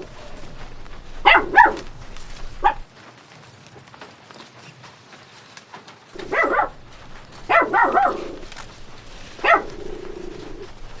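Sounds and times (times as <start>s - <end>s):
dog barking: 0.0s - 2.9s, 6.2s - 11.0s.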